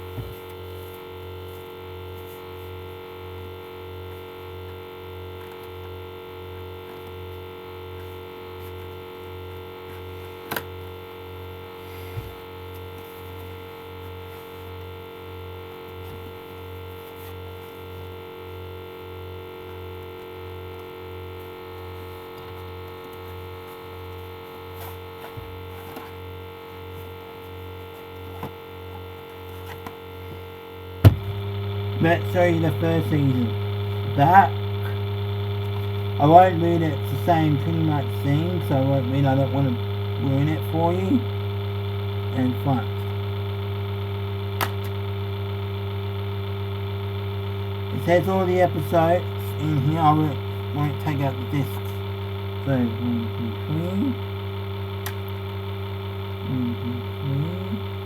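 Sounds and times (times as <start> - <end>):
electrical mains hum: 0.0 - 58.0.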